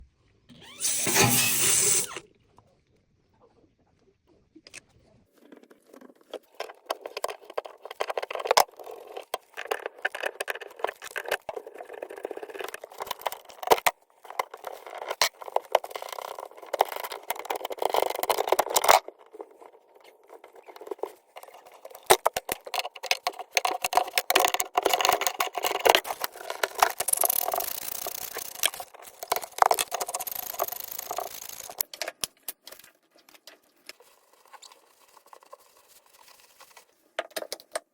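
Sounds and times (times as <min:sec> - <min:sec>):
hand tools clattering and scraping: 0:00.8 - 0:02.2.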